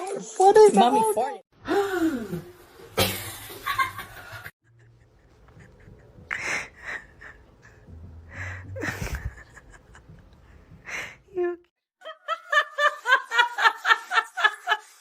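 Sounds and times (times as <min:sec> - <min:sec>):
person laughing under breath: 0:03.8 - 0:11.2.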